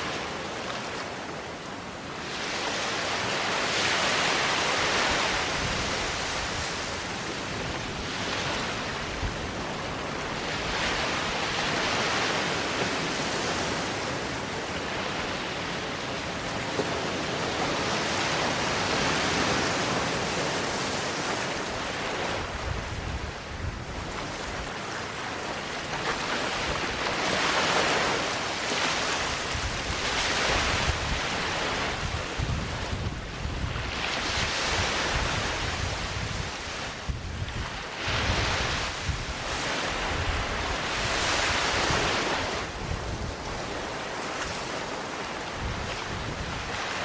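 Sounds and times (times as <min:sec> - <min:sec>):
waves breaking on a beach: 0:00.0 - 0:47.0
wind buffeting microphone: 0:16.3 - 0:44.7, 0:45.3 - 0:47.0.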